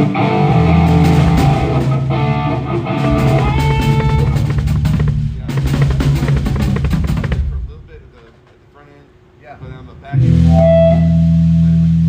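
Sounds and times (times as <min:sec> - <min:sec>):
electric guitar: 0:00.0 - 0:07.3, 0:10.1 - 0:12.0
low bass notes: 0:00.0 - 0:08.3, 0:09.6 - 0:12.0
drum kit: 0:00.0 - 0:08.5.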